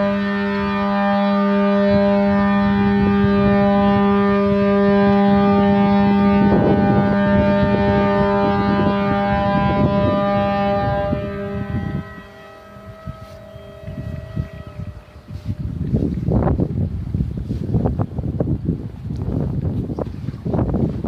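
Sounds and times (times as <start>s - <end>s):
boat horn blast: 0.0s - 16.4s.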